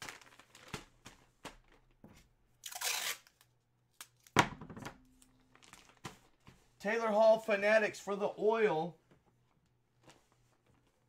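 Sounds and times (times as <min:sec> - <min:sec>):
packaging tearing: 0:00.0 - 0:00.9, 0:02.6 - 0:04.3
packaging crackling and rustling: 0:00.0 - 0:03.5, 0:05.1 - 0:06.6.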